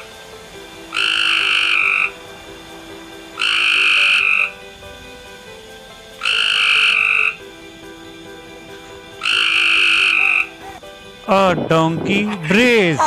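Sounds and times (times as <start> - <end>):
frog croaking: 0.0 - 4.8, 6.2 - 7.6, 8.3 - 10.9.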